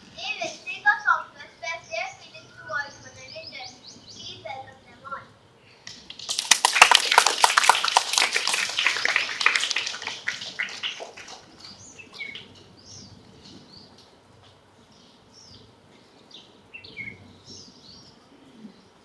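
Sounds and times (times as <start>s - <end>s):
faint bird chirps: 0.1s - 6.2s
audience applause: 6.2s - 12.0s.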